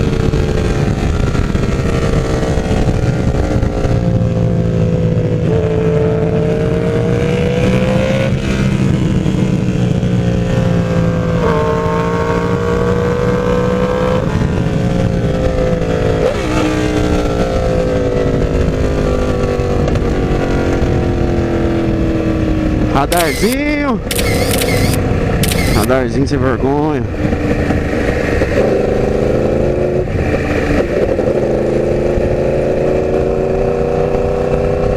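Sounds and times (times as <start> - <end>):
motorcycle engine revving: 0.0 - 22.1, 22.8 - 26.1.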